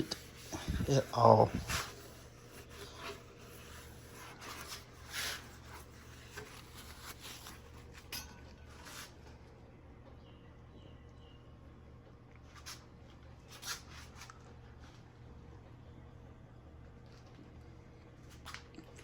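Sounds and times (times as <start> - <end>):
soft rubbing and swishes: 0.0 - 8.0.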